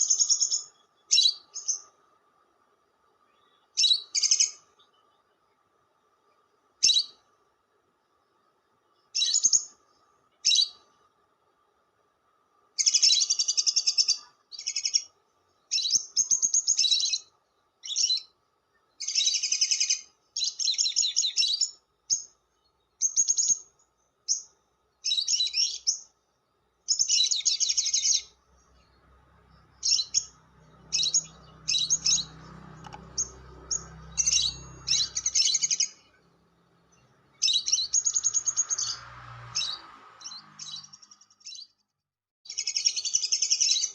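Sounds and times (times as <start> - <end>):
bird chattering in shrill bursts: 33.1 - 36.1.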